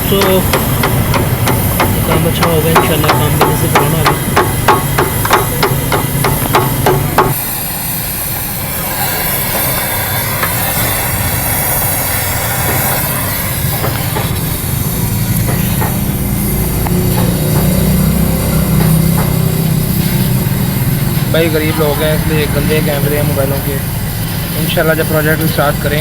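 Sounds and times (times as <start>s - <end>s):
hammer striking sheet metal: 0.0s - 7.4s, 9.4s - 21.4s
steady hiss: 0.0s - 26.0s.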